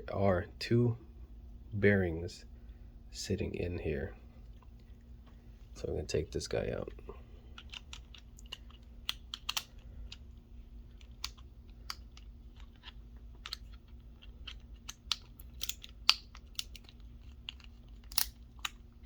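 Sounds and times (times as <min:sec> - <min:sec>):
small metal parts clicking: 0:07.5 - 0:10.3, 0:10.9 - 0:19.0.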